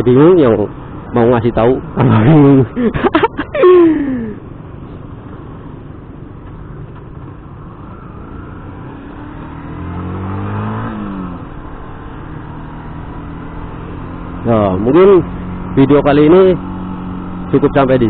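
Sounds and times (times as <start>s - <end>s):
motorcycle engine: 0.0s - 18.0s
wind and road noise: 0.0s - 18.0s.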